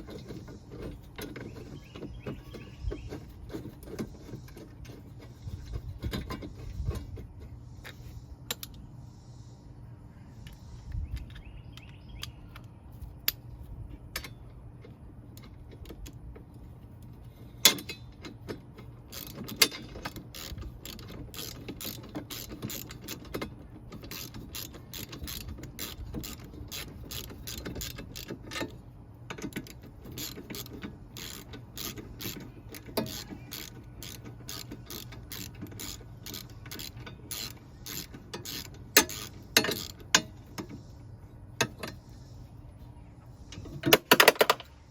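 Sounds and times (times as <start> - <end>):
ratchet wrench clicking: 7.8 - 8.8, 17.6 - 40.9.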